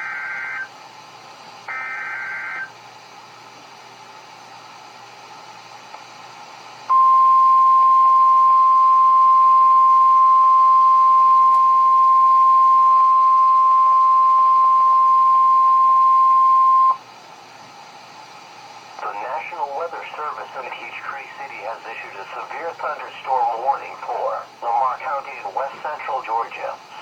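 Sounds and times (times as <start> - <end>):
loud high alarm tone: 1.7 - 2.7, 6.9 - 17.0
faint radio hiss: 17.0 - 27.0.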